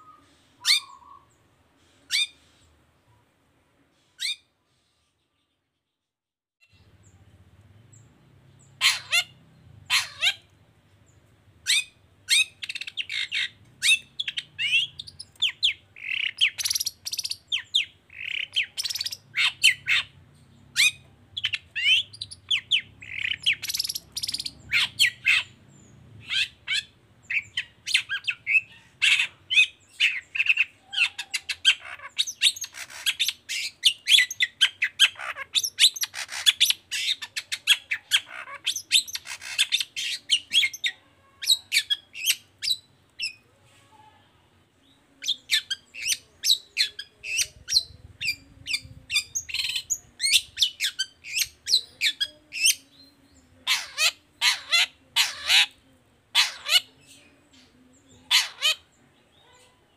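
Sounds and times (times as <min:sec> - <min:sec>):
bird singing harsh chirps: 0:11.6 - 0:43.4.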